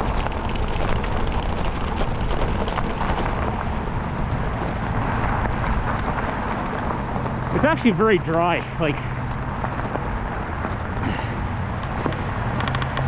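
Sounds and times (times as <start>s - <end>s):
wind on microphone: 0.0s - 7.8s
bike tyres rolling on snow: 0.0s - 13.0s.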